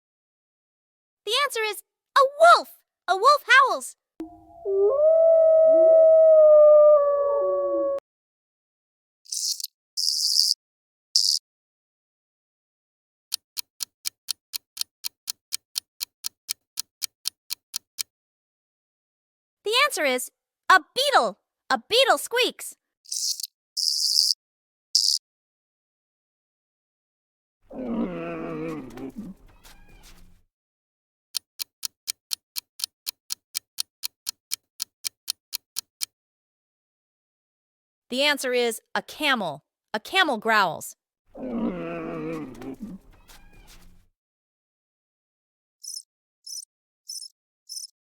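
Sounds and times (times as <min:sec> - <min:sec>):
rapid sharp ticks: 0:13.3 - 0:18.1, 0:31.4 - 0:36.1
camel growling call: 0:27.7 - 0:30.0, 0:41.4 - 0:43.6.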